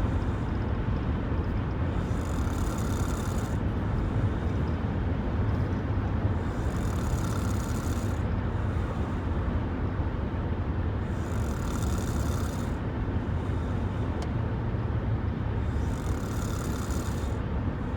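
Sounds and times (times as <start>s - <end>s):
person snoring: 2.0s - 3.6s, 6.4s - 8.2s, 11.1s - 12.8s, 15.7s - 17.4s.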